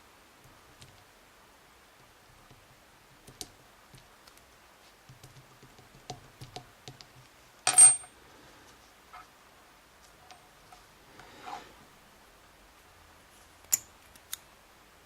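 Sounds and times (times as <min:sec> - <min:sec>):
metal piece clattering on hard surface: 0:07.7 - 0:08.1.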